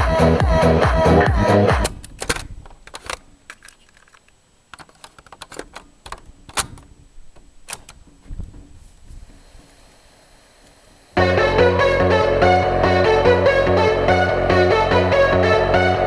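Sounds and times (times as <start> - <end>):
loud mechanical clunks: 1.6 - 3.2
cassette deck controls clicking: 1.7 - 8.2.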